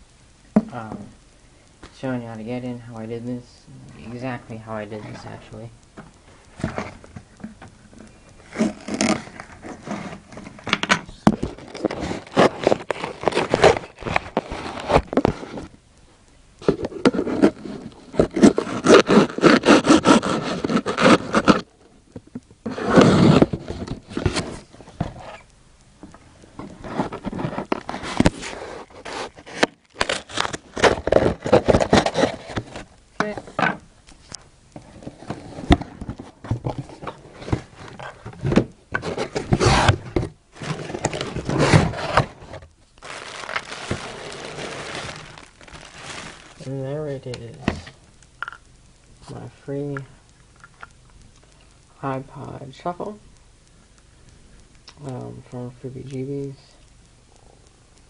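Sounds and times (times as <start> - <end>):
packaging scraping and rustling: 6.5 - 15.8, 16.6 - 21.7, 22.7 - 25.5, 26.6 - 33.6, 34.8 - 48.6.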